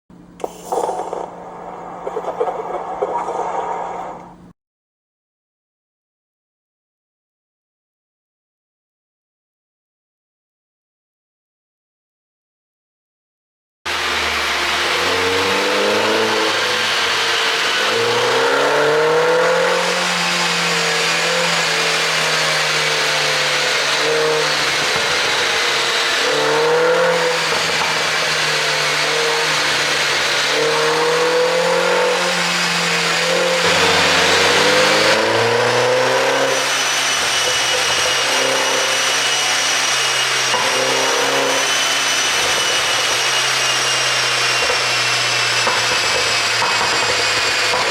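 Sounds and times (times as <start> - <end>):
car engine idling and revving: 13.9 - 47.9
exhaust popping: 13.9 - 47.9.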